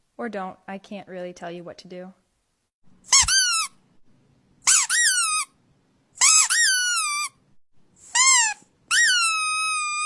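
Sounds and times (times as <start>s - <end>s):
squeaky dog toy squeaks: 3.1s - 3.8s, 4.6s - 5.6s, 6.2s - 7.4s, 8.0s - 10.0s.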